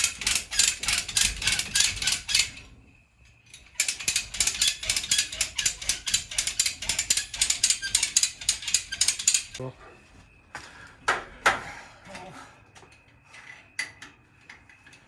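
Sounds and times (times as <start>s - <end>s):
ratchet hoist pawl clicking: 0.0s - 2.6s, 3.5s - 9.6s.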